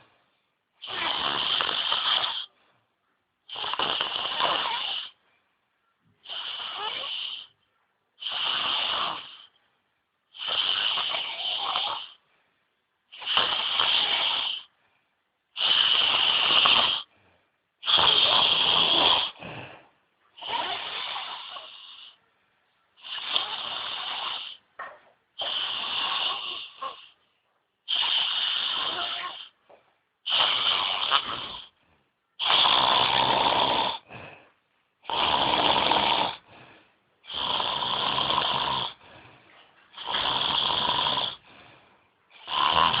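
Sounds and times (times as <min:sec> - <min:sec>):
person snoring: 0:00.8 - 0:02.5, 0:03.5 - 0:05.2, 0:06.2 - 0:07.5, 0:08.2 - 0:09.6, 0:10.3 - 0:12.2, 0:13.1 - 0:14.7, 0:15.6 - 0:17.1, 0:17.8 - 0:22.2, 0:23.0 - 0:24.6, 0:25.4 - 0:27.2, 0:27.9 - 0:29.6, 0:30.2 - 0:31.8, 0:32.4 - 0:36.5, 0:37.2 - 0:39.1, 0:39.9 - 0:41.6, 0:42.3 - 0:43.0.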